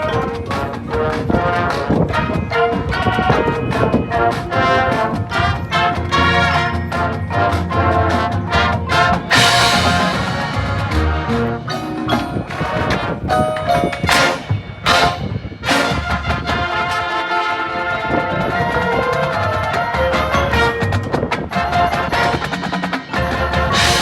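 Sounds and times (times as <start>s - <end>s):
marching band playing: 0.0s - 24.0s
sharp drum hits: 9.3s - 16.3s.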